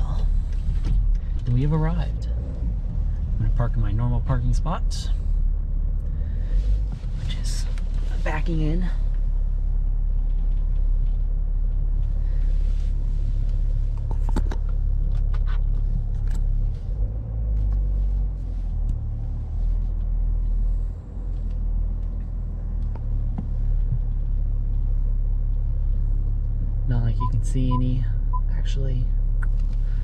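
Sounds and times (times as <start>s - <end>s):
car engine rumble from inside cabin: 0.0s - 30.0s.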